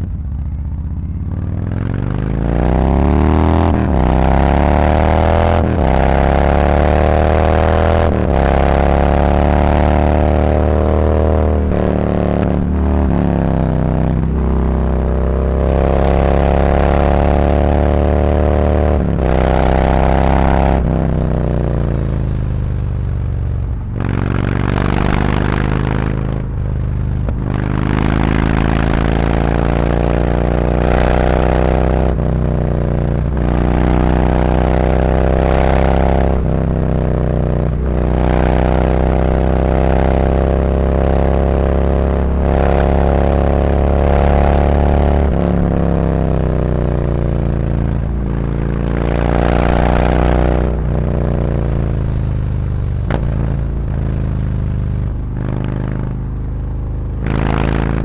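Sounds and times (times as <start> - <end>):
motorcycle exhaust revving: 0.0 - 58.0.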